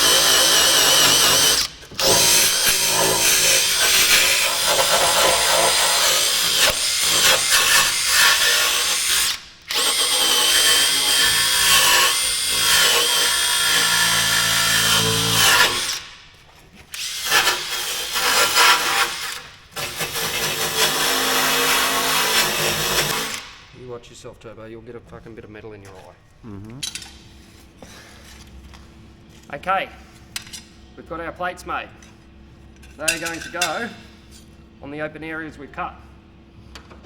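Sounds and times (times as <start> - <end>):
angle grinder grinding steel: 0.0 - 16.1.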